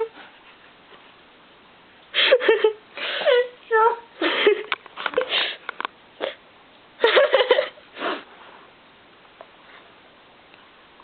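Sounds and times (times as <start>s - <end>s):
person sniffing: 8.0s - 8.4s.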